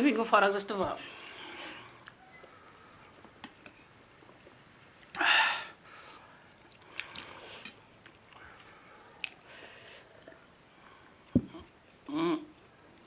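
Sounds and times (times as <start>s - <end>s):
faint chewing: 1.3s - 5.2s, 6.5s - 11.8s.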